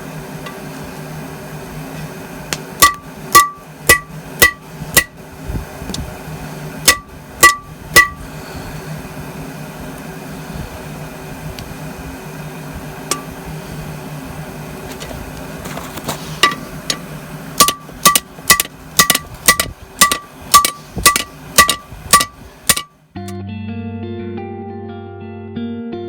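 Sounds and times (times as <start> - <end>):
hammer blows on anvil: 2.8 - 5.2, 6.9 - 8.2, 17.6 - 23.0.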